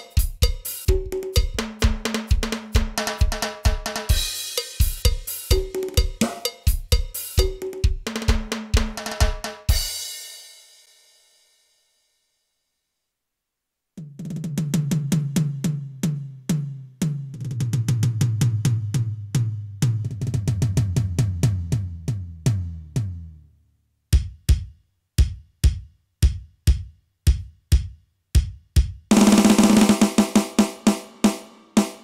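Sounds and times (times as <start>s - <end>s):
electronic drum tom runs: 24.2s - 32.0s.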